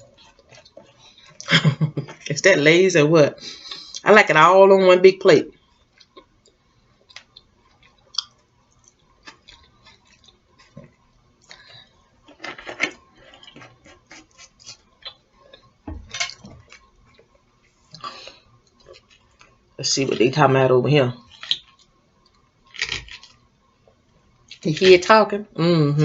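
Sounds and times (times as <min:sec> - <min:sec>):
chewing crunches: 0:05.8 - 0:11.8, 0:17.9 - 0:19.6, 0:21.2 - 0:23.4.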